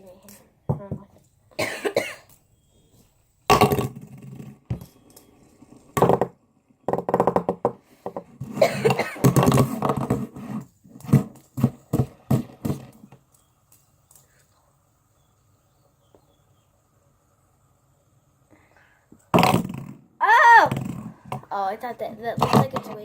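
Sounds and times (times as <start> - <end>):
person making wordless sounds: 20.2 - 23.0.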